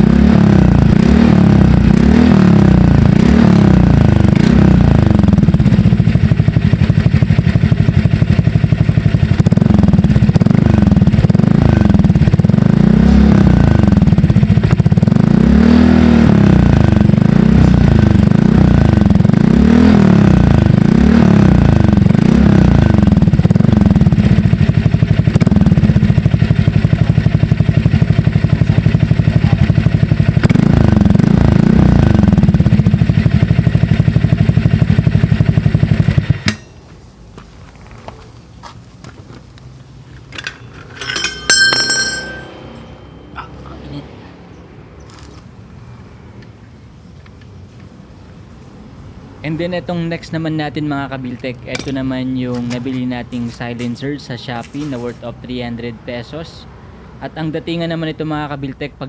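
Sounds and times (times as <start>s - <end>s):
scooter engine revving and idling: 0.0s - 36.6s.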